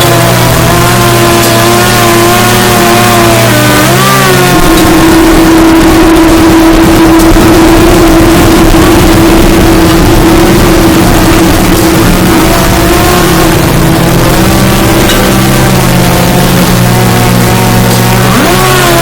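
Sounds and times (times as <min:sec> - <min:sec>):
chainsaw drone: 0:00.0 - 0:19.0
distorted harsh noise: 0:00.0 - 0:19.0
steady hum: 0:00.0 - 0:19.0.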